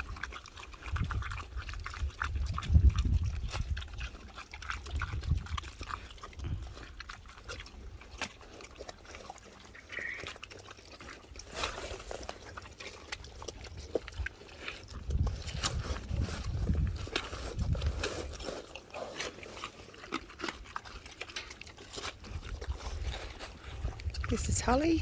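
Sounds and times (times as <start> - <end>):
pigs chewing and smacking: 0.0 - 25.0
small crunches: 3.5 - 24.3
pig grunts: 3.8 - 11.3.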